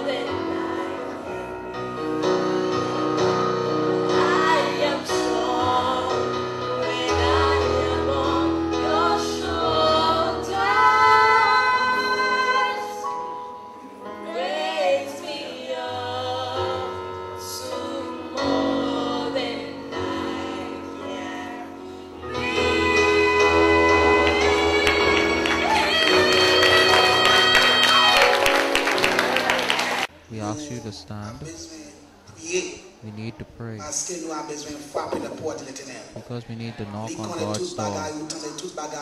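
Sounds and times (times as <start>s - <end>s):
woman singing gospel hymn: 0.0s - 1.4s, 3.9s - 13.3s, 14.1s - 30.0s.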